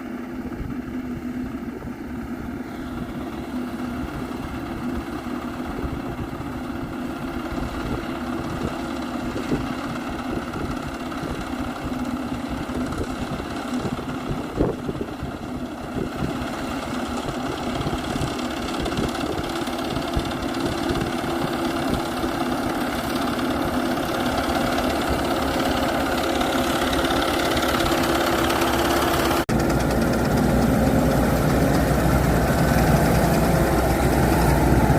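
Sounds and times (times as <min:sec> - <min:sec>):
combine harvester engine running: 0:00.0 - 0:34.9.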